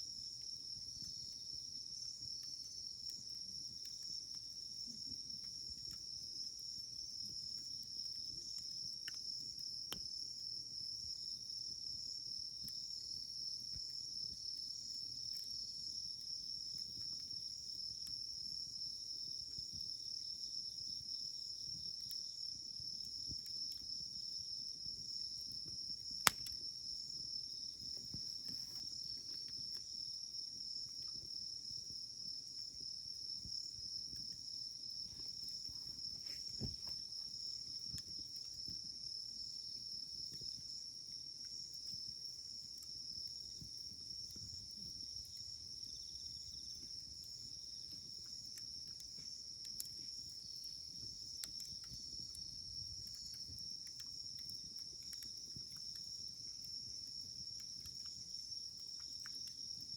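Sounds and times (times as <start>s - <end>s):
night insects chirring: 0.0s - 59.9s
campfire pops: 24.7s - 30.0s, 32.8s - 38.9s, 47.9s - 59.9s.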